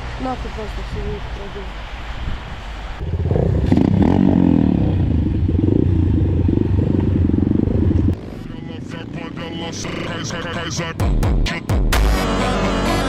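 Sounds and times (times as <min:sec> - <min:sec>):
motorcycle engine revving: 0:03.0 - 0:11.1.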